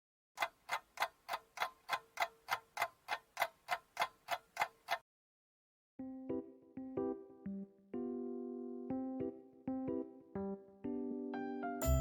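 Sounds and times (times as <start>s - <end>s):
alarm clock ticking: 0.4s - 5.0s.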